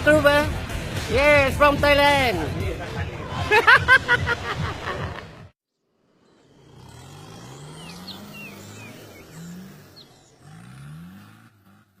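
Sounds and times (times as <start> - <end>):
engine revving: 6.0 - 12.0.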